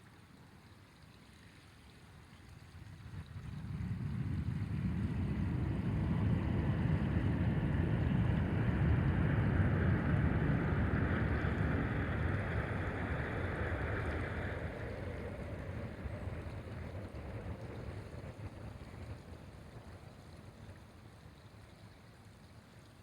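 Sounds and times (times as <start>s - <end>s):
wind buffeting the microphone: 3.0s - 20.1s.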